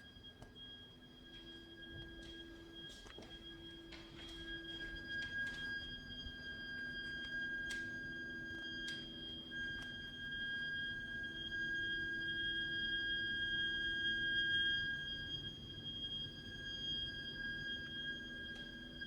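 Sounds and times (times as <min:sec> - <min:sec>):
shrill whistle from pipework: 0:00.0 - 0:19.0.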